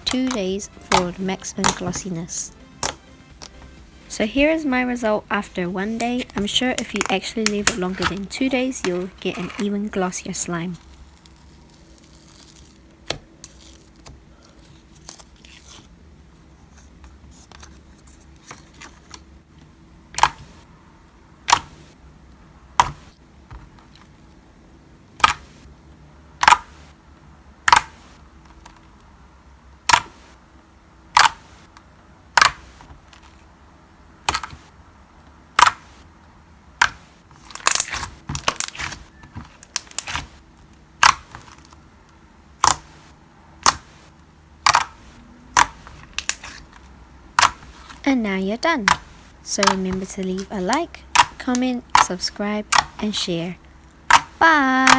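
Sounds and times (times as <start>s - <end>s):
slime clicking: 34.2s - 34.6s, 35.6s - 35.8s, 41.0s - 41.3s, 42.6s - 42.9s, 43.6s - 43.9s, 44.6s - 46.6s, 47.4s - 47.6s, 48.8s - 53.0s.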